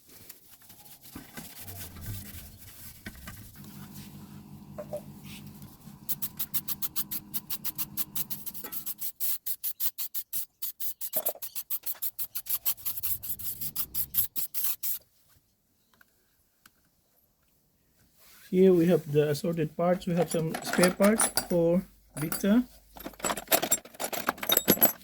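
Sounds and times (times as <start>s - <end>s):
tool scrubbing a hard surface: 5.2s - 15.0s.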